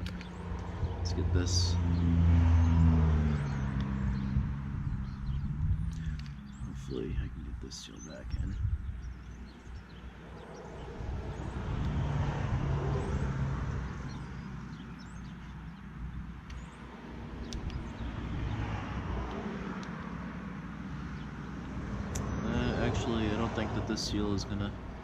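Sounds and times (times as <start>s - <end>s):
vehicles passing: 0.0s - 25.0s
faint clicks of small parts: 5.9s - 6.4s.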